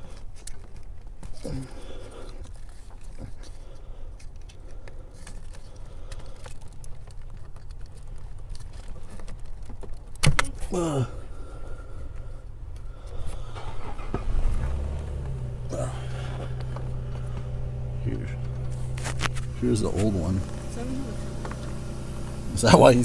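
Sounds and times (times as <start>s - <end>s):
steady low hum: 11.0s - 23.0s.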